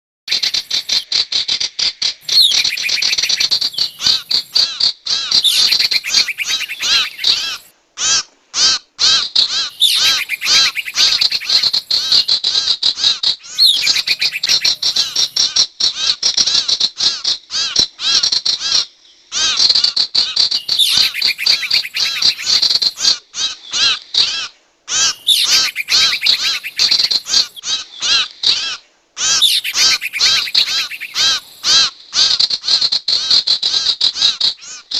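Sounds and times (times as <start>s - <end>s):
shrill stuttering bird chirps: 0.3s - 1.0s, 2.2s - 7.7s, 9.6s - 12.4s, 13.4s - 15.4s, 20.3s - 23.1s, 24.4s - 31.8s.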